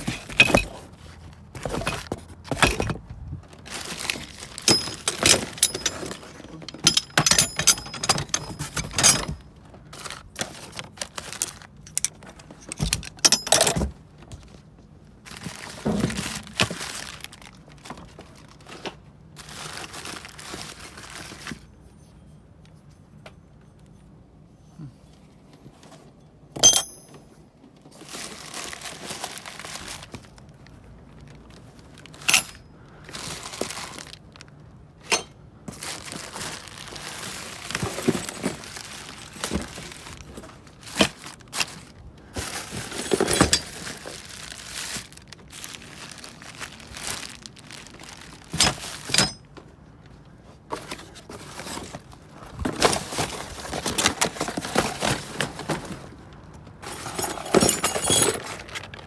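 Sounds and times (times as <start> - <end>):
scraping and rustling: 0.0 - 14.6
metal door hardware clanking: 0.1 - 0.8, 1.7 - 3.1, 4.6 - 9.4, 11.9 - 13.9, 26.6 - 27.2, 32.2 - 32.6, 35.1 - 35.4, 43.1 - 43.7, 48.6 - 49.4.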